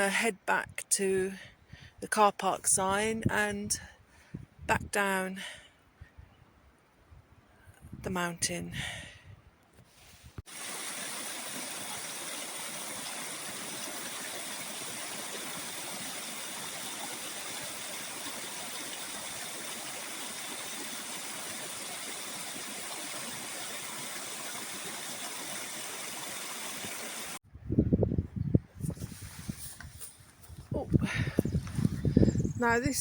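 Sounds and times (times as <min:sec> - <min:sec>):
fast-flowing stream water: 0:10.5 - 0:27.4.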